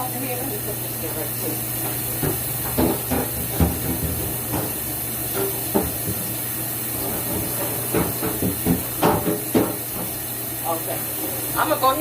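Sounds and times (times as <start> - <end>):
household items knocking: 2.2 - 4.8.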